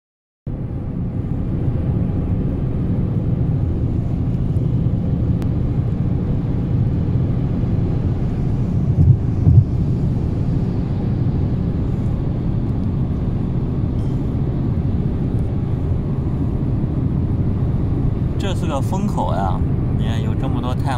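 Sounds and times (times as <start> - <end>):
car road rumble: 0.5 - 20.9
brief thumps: 9.0 - 9.8.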